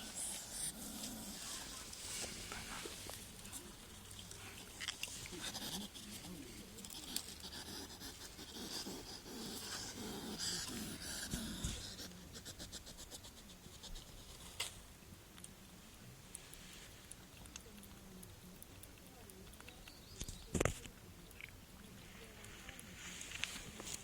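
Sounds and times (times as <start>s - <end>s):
hedgehog sniffing and snuffling: 0.0s - 14.7s
faint scratching: 0.0s - 14.8s.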